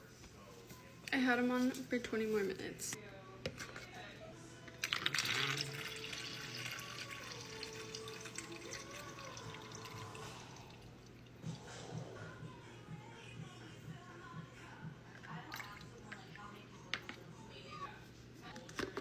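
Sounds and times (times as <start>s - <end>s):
liquid running and splashing: 4.8s - 11.4s.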